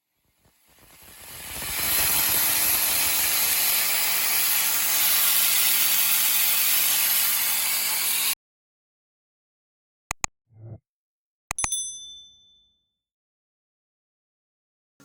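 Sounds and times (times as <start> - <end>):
plasma cutter hissing: 0.4 - 8.4.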